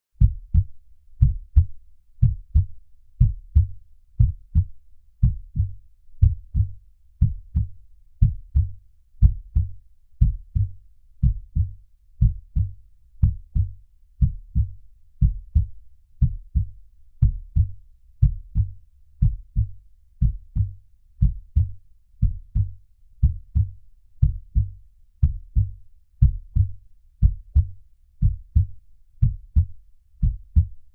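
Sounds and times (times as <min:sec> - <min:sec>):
heartbeat double thump: 0:00.2 - 0:30.7.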